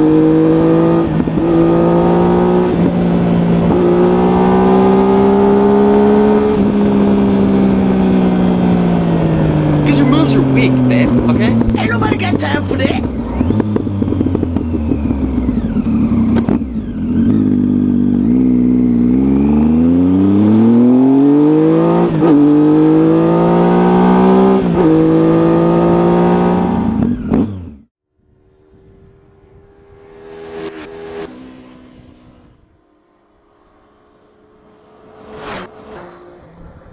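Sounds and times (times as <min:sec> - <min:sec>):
motorcycle engine accelerating: 0:00.0 - 0:36.9.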